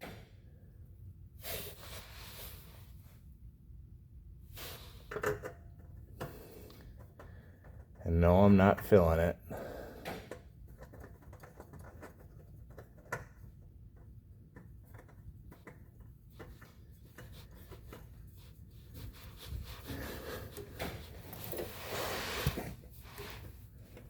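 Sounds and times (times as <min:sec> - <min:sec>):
oil filter rubbing and scraping: 0:10.8 - 0:24.0.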